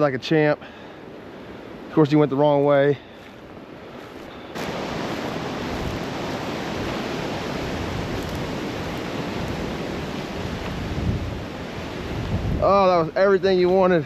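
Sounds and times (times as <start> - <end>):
strong wind on microphone: 4.5 - 13.2.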